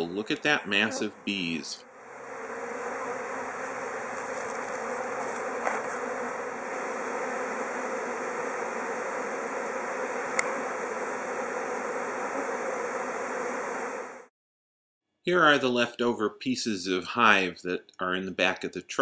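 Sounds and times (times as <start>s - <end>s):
honeybees buzzing: 0.0s - 14.3s.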